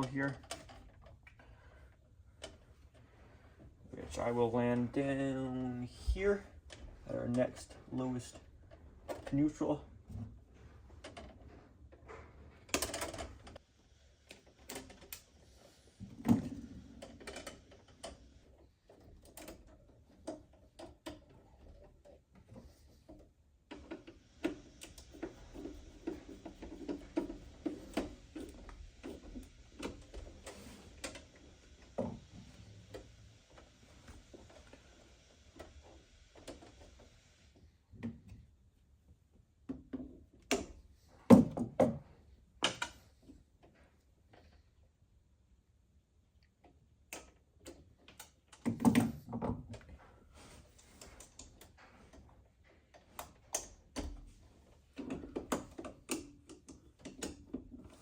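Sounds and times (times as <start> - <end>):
clicks taps and rustles: 46.4 - 58.0.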